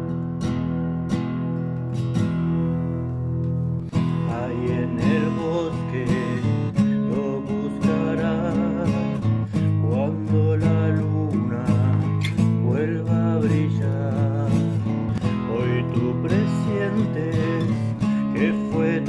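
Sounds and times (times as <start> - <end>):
acoustic guitar strummed chords: 0.0 - 19.0.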